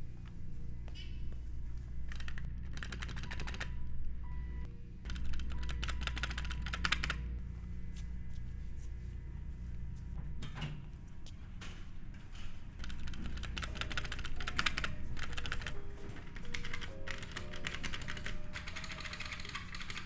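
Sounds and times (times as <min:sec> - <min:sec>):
steady low hum: 0:00.0 - 0:20.0
rapid irregular clicks: 0:02.1 - 0:03.8, 0:12.8 - 0:20.0.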